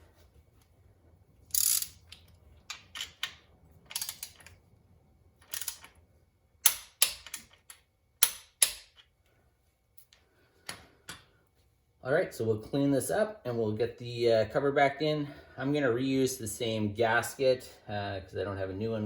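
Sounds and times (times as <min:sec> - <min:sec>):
torque wrench clicking: 0:01.5 - 0:04.5, 0:05.4 - 0:05.9.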